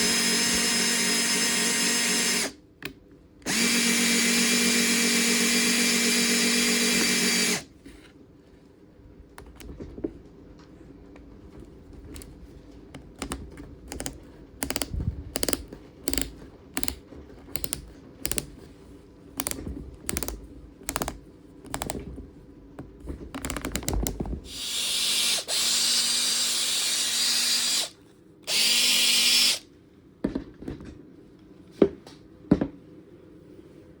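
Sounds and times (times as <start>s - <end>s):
drill motor whining: 0.0s - 2.6s, 3.5s - 7.7s, 24.5s - 27.9s, 28.5s - 29.6s.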